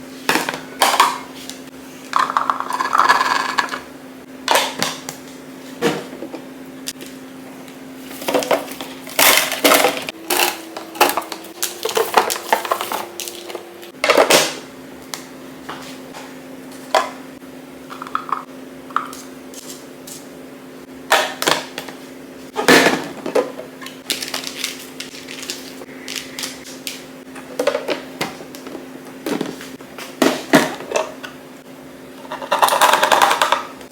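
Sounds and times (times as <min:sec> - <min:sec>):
fridge low hum: 0:00.0 - 0:33.9
containers knocking and clinking: 0:02.1 - 0:03.8, 0:08.2 - 0:14.4, 0:17.9 - 0:19.2, 0:27.4 - 0:29.6, 0:32.3 - 0:33.8.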